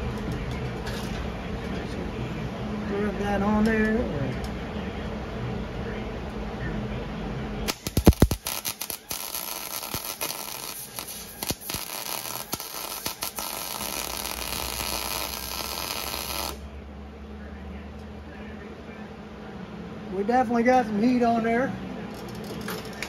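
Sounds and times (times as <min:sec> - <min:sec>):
welding arc crackling: 0:07.7 - 0:16.7.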